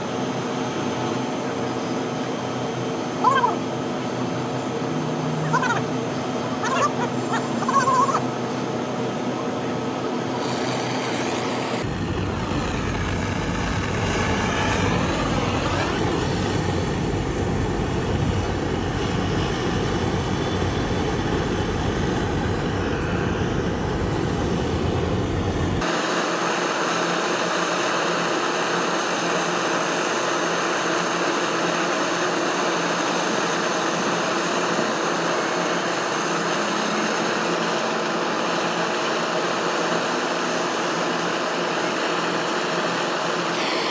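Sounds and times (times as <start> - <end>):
gas torch flame hissing: 10.3 - 20.4, 43.0 - 43.9.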